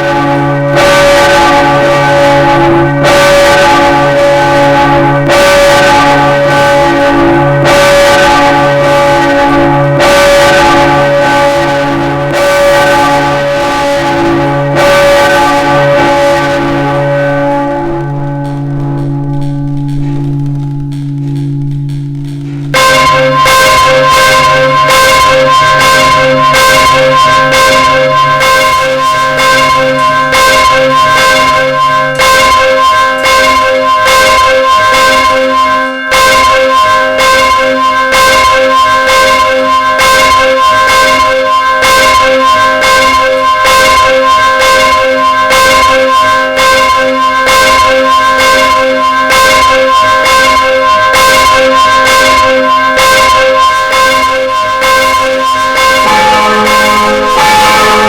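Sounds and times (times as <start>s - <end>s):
church bell ringing: 0.0s - 58.0s
deep hum: 16.6s - 32.2s, 55.7s - 58.0s.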